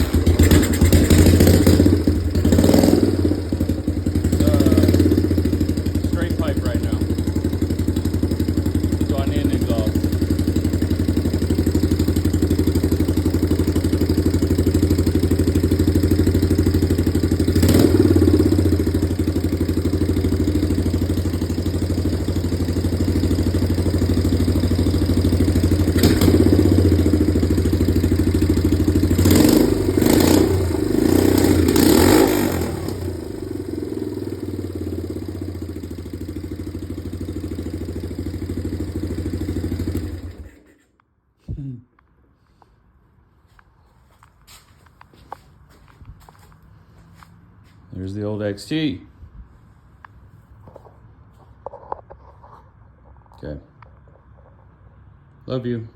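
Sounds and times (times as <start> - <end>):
motorcycle engine idling: 0.0 - 40.8.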